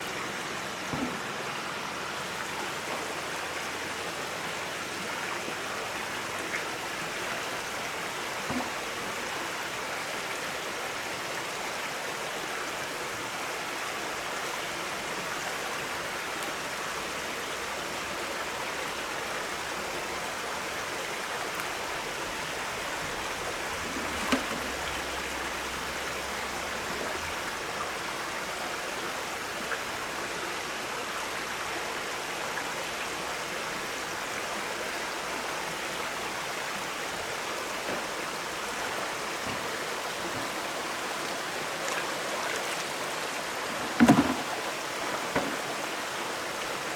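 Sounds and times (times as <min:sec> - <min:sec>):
rushing floodwater: 0:00.0 - 0:46.9
faint knocks: 0:45.2 - 0:45.7.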